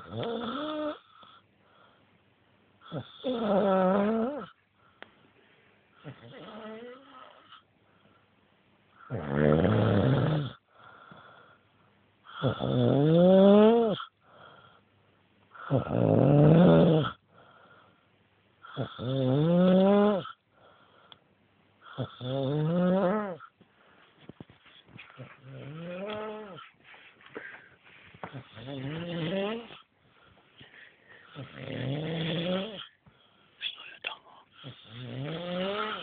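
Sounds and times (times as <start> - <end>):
man snoring loudly: 0.0 - 1.0, 2.9 - 4.5, 9.1 - 10.6, 12.4 - 14.0, 15.6 - 17.2, 18.8 - 20.4, 22.0 - 23.4, 28.4 - 29.8, 31.3 - 32.9, 34.6 - 36.0
quiet breaths: 0.0 - 3.3, 4.3 - 9.1, 10.6 - 12.6, 14.1 - 15.8, 17.2 - 19.1, 20.3 - 22.2, 23.4 - 36.0.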